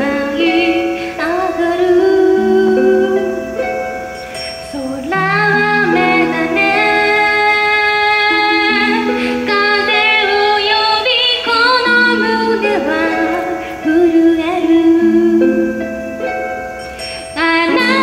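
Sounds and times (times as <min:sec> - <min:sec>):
woman singing a pop song: 0:00.0 - 0:03.3, 0:04.6 - 0:15.8, 0:17.4 - 0:18.0
instrumental accompaniment: 0:00.0 - 0:18.0.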